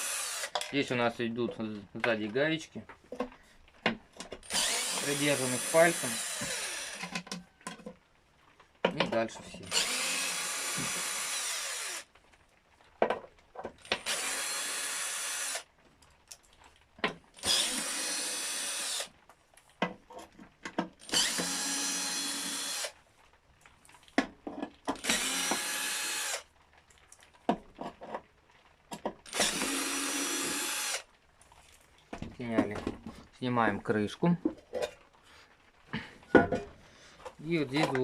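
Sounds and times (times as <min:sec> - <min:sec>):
electric screwdriver backing out screws: 0:04.4 - 0:07.4, 0:09.6 - 0:12.0, 0:17.4 - 0:19.1, 0:21.0 - 0:22.9, 0:24.9 - 0:26.4, 0:29.3 - 0:31.0.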